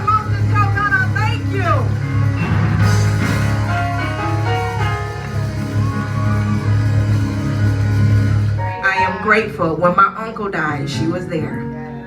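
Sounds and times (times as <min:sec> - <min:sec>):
steady bass note: 0:00.0 - 0:09.4
church band praise music: 0:00.0 - 0:11.7.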